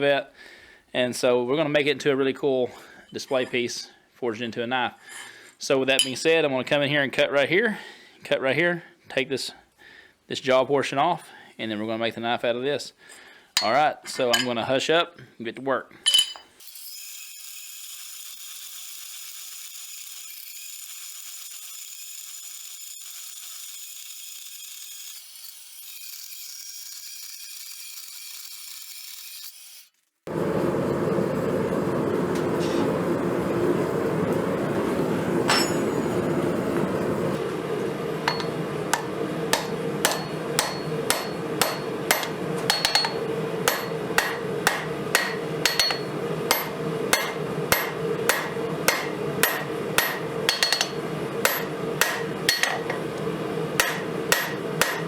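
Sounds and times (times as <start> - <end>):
hammer blows on steel: 38.2 - 53.2, 53.8 - 55.0.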